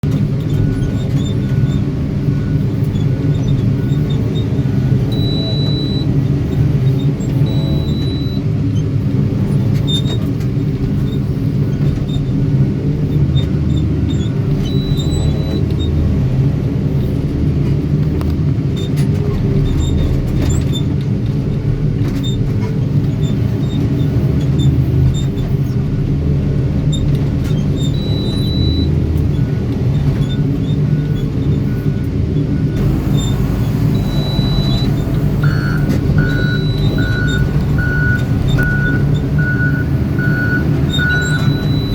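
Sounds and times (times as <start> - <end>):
diesel engine rumbling: 0.0 - 41.9
reversing alarm beeping: 5.0 - 6.2, 7.4 - 8.4, 27.8 - 29.6, 31.6 - 41.9.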